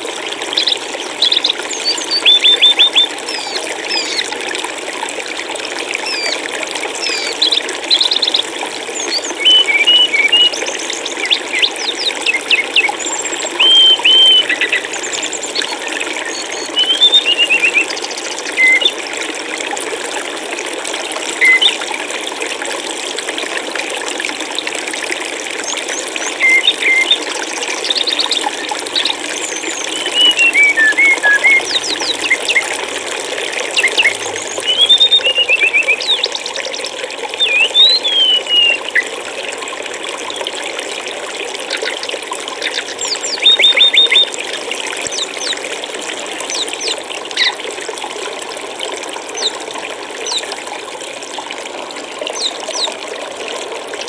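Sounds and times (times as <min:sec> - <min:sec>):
stream water running: 0:00.0 - 0:54.0
songbirds chirping and trilling: 0:00.5 - 0:04.3, 0:07.0 - 0:18.9, 0:25.7 - 0:32.9, 0:33.6 - 0:39.1, 0:42.6 - 0:44.4.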